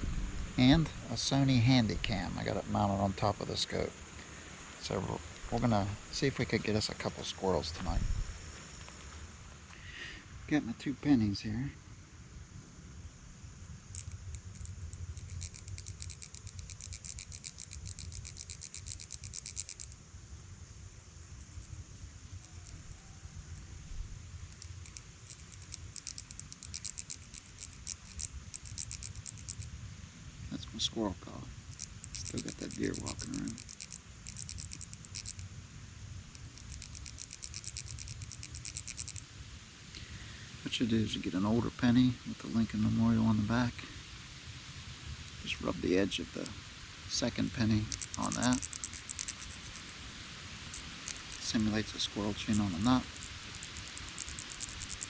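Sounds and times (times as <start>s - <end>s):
coin scratching against coin: 13.9s - 19.9s, 24.6s - 29.7s, 31.7s - 35.4s, 36.4s - 39.2s, 47.1s - 50.0s, 50.7s - 55.0s.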